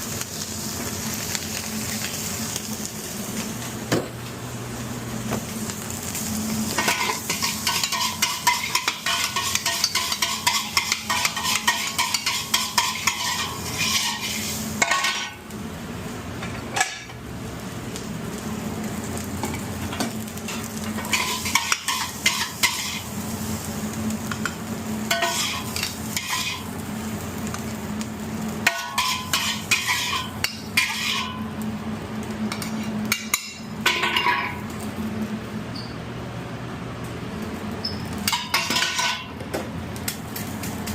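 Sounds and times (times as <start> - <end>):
food sizzling in a pan: 0.0 - 36.0, 37.2 - 39.4, 40.1 - 40.9
spatula scraping and tossing food: 6.7 - 15.4, 20.5 - 23.2, 25.1 - 26.7, 28.6 - 31.4.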